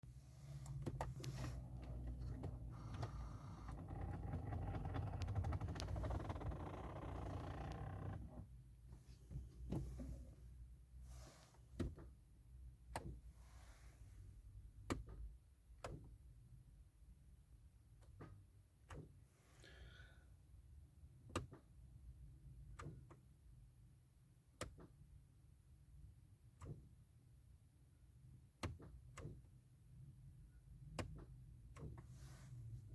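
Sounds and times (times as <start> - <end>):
car ignition clicks: 0.5 - 8.5.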